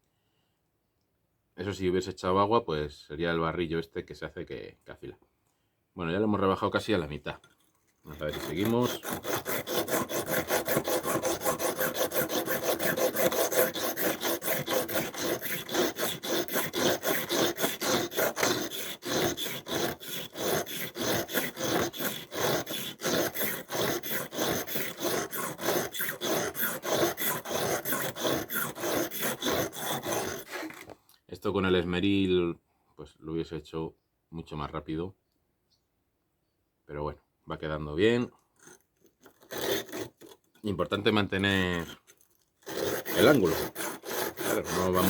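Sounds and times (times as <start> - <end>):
blade grinding on whetstone: 8.1 - 30.9, 38.6 - 45.0.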